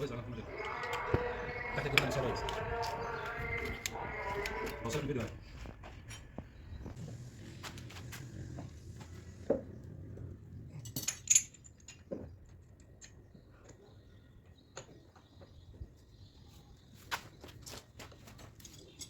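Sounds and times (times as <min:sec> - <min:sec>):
small metal objects clinking: 0:10.8 - 0:12.0.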